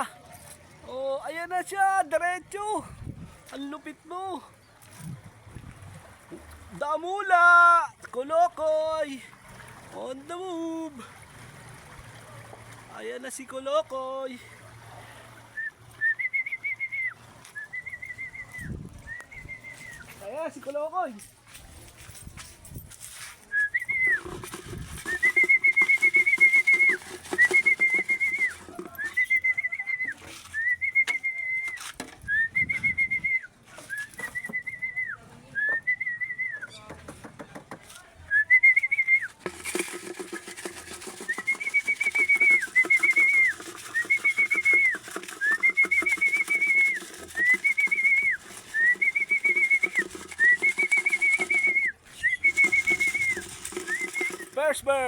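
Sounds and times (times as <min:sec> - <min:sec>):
person whistling: 0:15.6 - 0:20.1, 0:23.5 - 0:36.7, 0:38.3 - 0:54.7.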